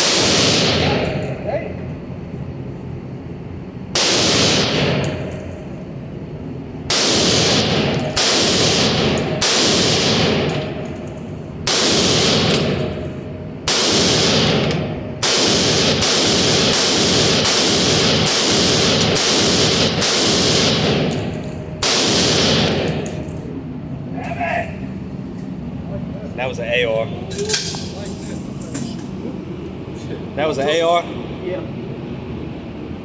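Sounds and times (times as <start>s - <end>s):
gunshots with ringing tail: 0.0s - 1.4s, 4.0s - 5.6s, 6.9s - 23.5s.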